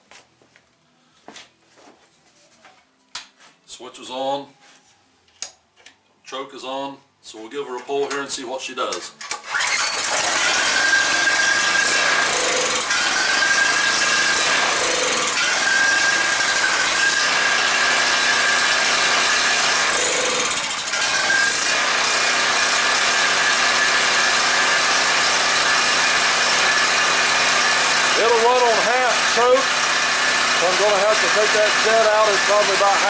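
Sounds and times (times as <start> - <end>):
small generator engine running: 9.5 - 33.0.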